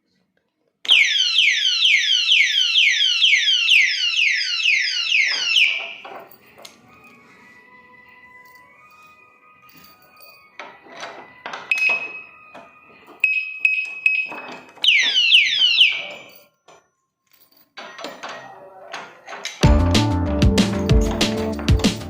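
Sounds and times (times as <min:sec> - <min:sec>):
falling siren chirps: 0:00.9 - 0:06.0, 0:14.8 - 0:16.3.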